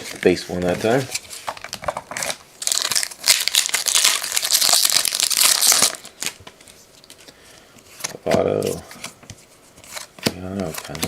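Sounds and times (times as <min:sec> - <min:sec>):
wrapper tearing and crinkling: 0:01.5 - 0:06.4.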